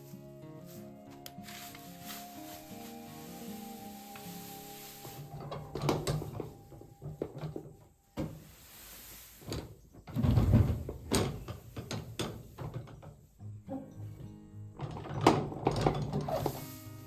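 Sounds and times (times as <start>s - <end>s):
door knocks and clatter: 10.0s - 13.2s.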